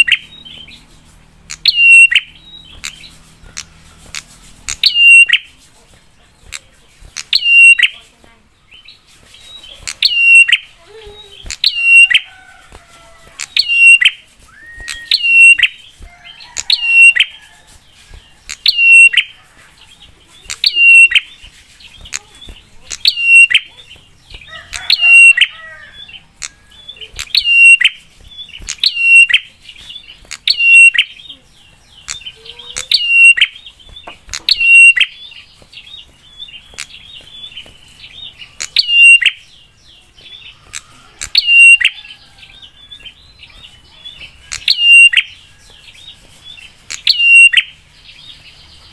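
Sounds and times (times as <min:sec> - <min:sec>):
faint bird chirps: 0:06.4 - 0:12.5, 0:13.4 - 0:48.9
bird sharp high call: 0:13.4 - 0:15.8, 0:30.4 - 0:31.2, 0:32.1 - 0:33.6, 0:34.3 - 0:35.2.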